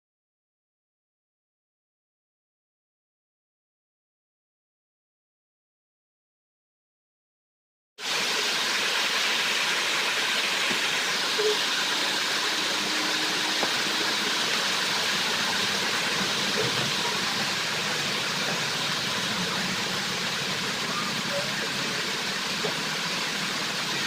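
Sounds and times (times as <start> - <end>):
steady hiss of noise: 8.0 - 24.0.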